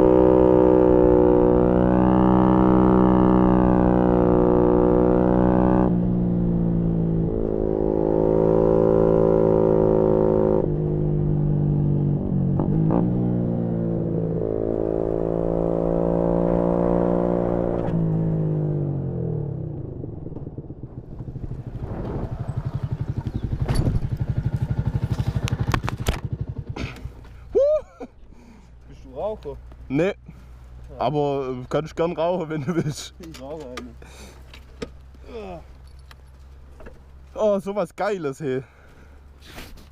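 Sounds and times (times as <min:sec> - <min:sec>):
motorcycle engine shifting gears: 0:00.0 - 0:27.4
motorcycle engine idling: 0:20.9 - 0:27.5.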